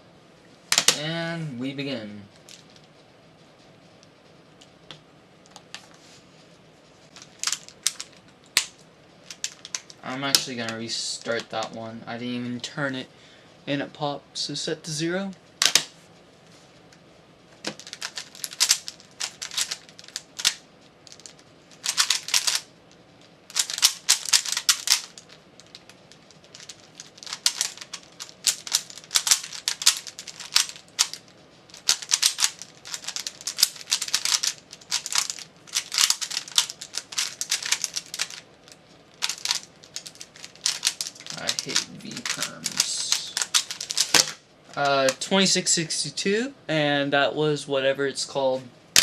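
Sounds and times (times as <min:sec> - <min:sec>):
puzzle cube plastic clicking: 0:17.7 - 0:22.6, 0:23.5 - 0:38.4, 0:39.2 - 0:45.2.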